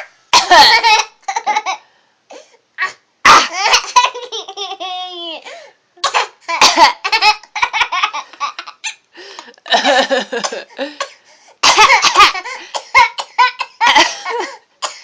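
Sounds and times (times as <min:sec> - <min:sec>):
short sharp coughs: 0:10.4 - 0:15.0.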